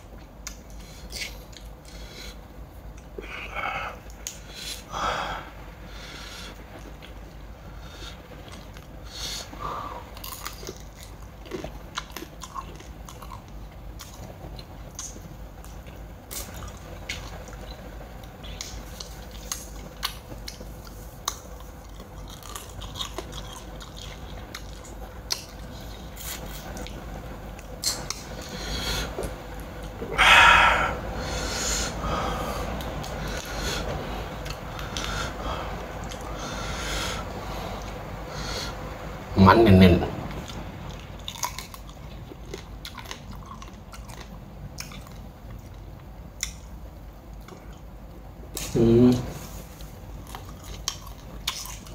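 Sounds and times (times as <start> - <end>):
chewing and crunching: 0.1 - 3.4, 8.0 - 30.1, 32.7 - 36.4, 40.3 - 48.8, 49.6 - 51.9.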